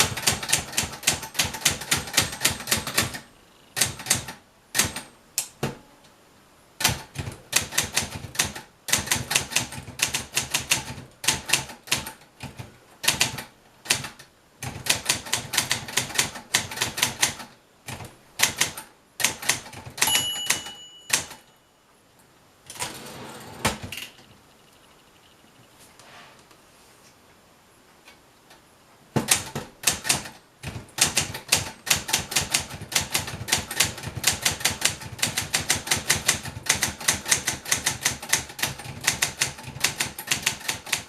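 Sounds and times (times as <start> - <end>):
typewriter carriage return rattle: 0.0 - 3.2, 29.3 - 41.0
typewriter key strikes: 18.4 - 21.5
typewriter margin bell: 20.0 - 21.8.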